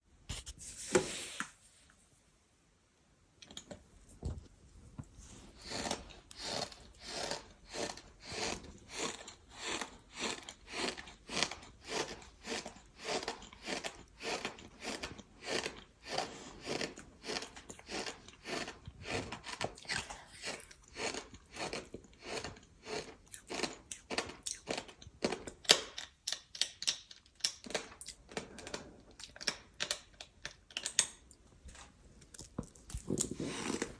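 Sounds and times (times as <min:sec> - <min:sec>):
crunchy chewing: 0:05.4 - 0:30.1.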